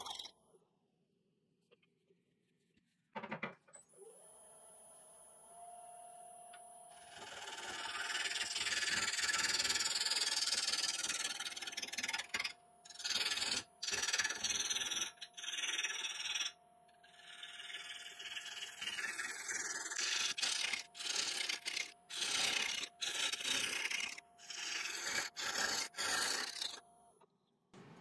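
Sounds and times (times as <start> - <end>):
gouge shearing wood: 7.0 - 26.8.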